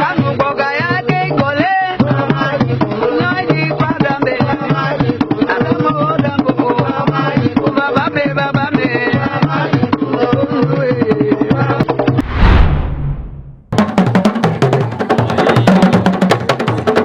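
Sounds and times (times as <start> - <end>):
drum ensemble fast rhythm: 13.7 - 17.0.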